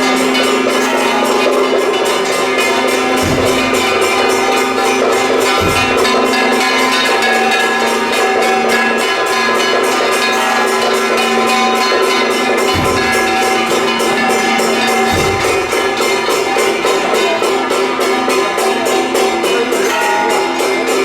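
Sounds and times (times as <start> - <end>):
deep drum beats: 0.0 - 9.0, 10.5 - 19.7
gongs and cymbals clanging: 0.0 - 21.0
held tones: 0.8 - 8.5, 10.6 - 19.7.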